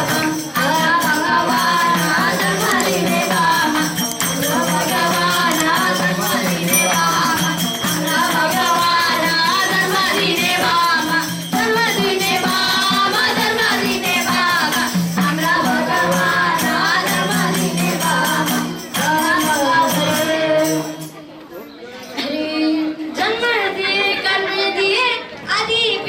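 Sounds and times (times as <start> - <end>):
jingling hand percussion: 0.0 - 21.4
wavering melody: 1.8 - 10.4.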